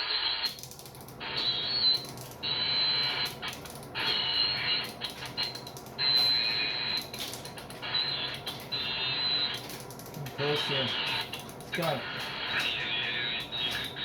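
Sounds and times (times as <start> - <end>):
noisy radio signal bursts: 10.4 - 14.0.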